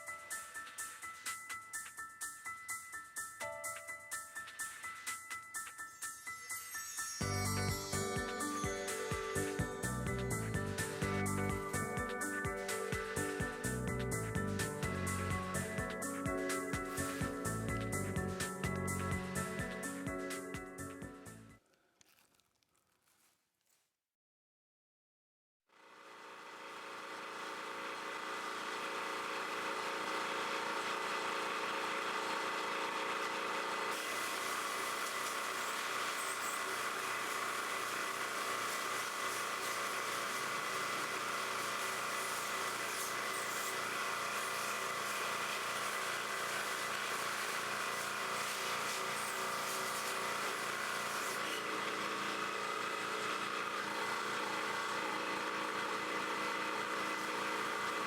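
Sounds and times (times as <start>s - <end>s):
motor-driven machine running: 7.2s - 19.9s, 25.9s - 58.0s.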